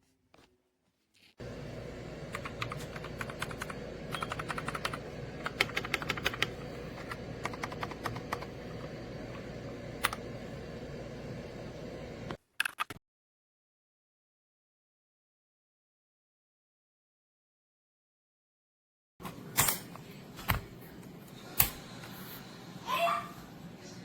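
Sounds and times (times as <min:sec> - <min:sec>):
steady low hum: 0:01.4 - 0:12.4.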